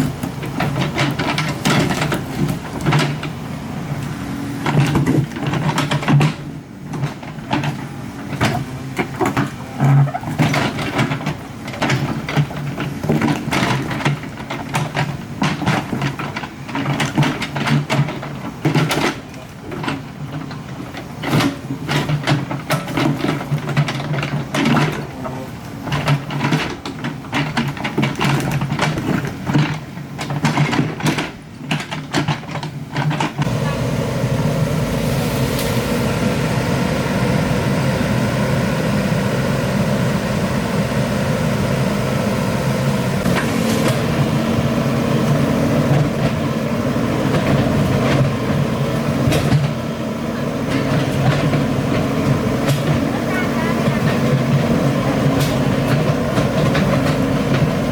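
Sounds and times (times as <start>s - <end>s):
diesel engine running: 0.0s - 18.8s, 33.4s - 57.9s
excavator bucket clanking on rock: 0.0s - 33.8s, 43.1s - 57.9s.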